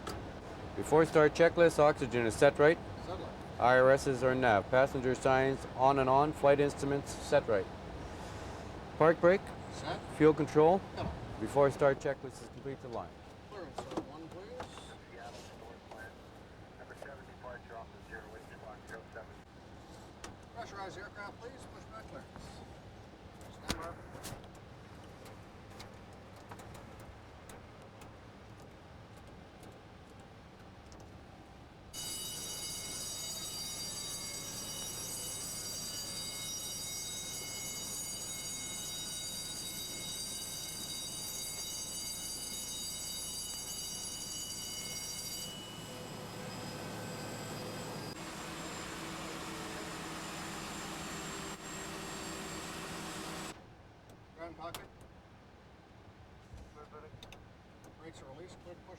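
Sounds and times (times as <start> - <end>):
aircraft cockpit hum: 0.0 - 19.4, 32.0 - 53.5
faint whining tones: 0.0 - 28.1, 32.0 - 53.6
loud high-pitched whine: 44.1 - 53.5.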